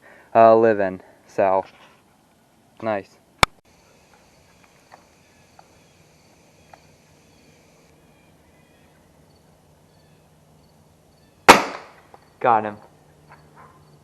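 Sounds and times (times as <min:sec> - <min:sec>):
distant bird chirps: 0:03.7 - 0:14.0.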